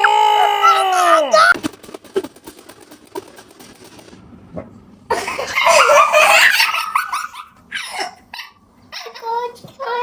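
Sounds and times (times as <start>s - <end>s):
child shrieking: 0.0s - 1.6s.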